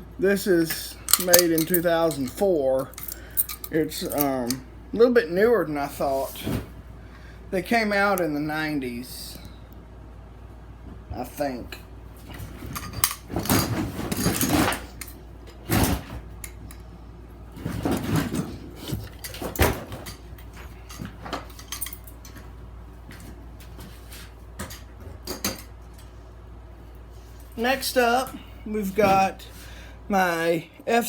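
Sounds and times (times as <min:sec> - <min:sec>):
plastic devices clicking and rattling: 0:01.1 - 0:04.6.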